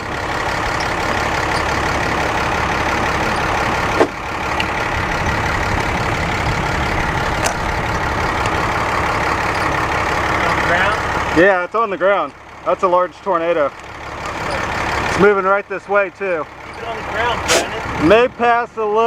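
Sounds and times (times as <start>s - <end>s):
vehicle engine running: 0.0s - 19.0s
brief sharp sound: 17.5s - 17.8s.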